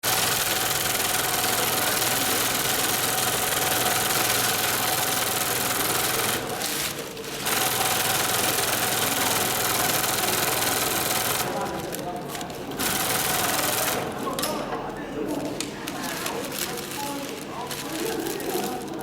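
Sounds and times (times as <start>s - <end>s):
industrial sewing machine stitching: 0.0s - 14.3s.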